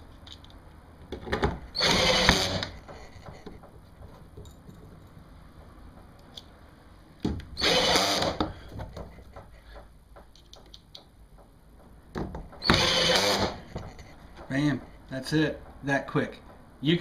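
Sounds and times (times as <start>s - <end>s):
power drill driving screw: 1.7s - 2.9s, 7.6s - 8.4s, 12.6s - 13.7s
small handling clicks: 10.2s - 11.1s.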